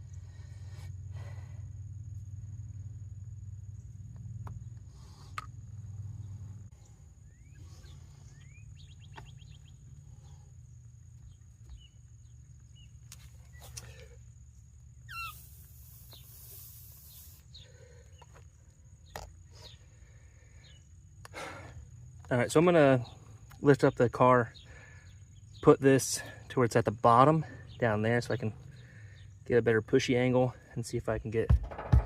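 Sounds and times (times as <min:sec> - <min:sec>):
low hum: 0:00.0 - 0:15.0
faint bird chirps: 0:04.5 - 0:10.6, 0:11.2 - 0:14.3, 0:15.0 - 0:18.4
brief hiss: 0:15.2 - 0:17.5.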